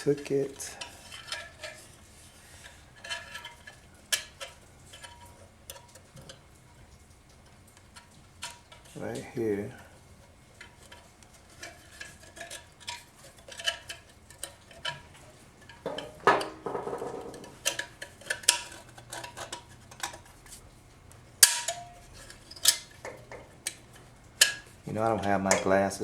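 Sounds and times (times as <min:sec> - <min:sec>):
metal clicks and scraping: 0:00.6 - 0:06.4, 0:10.6 - 0:25.8
ringing metal scrape: 0:21.4 - 0:23.2.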